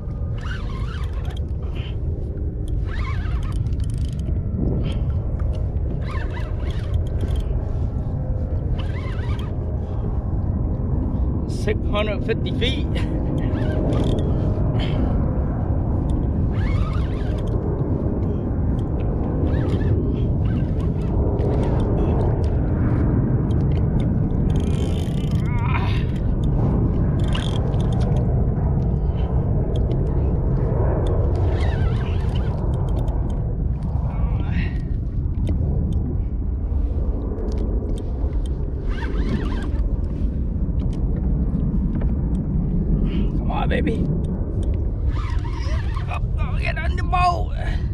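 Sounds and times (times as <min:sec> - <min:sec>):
faint rising squeaks: 0:00.0 - 0:10.2, 0:13.3 - 0:15.0, 0:15.9 - 0:22.2, 0:31.0 - 0:33.4, 0:38.0 - 0:40.4, 0:44.8 - 0:46.4
wind buffeting microphone: 0:00.0 - 0:47.9.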